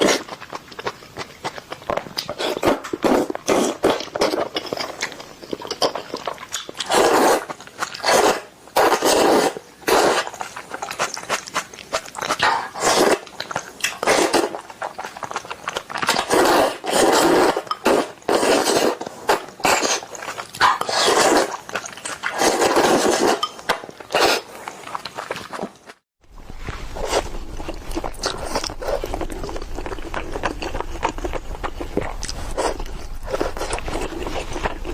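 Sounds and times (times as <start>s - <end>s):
noodle slurping and chewing: 0.0s - 26.0s, 26.6s - 34.9s.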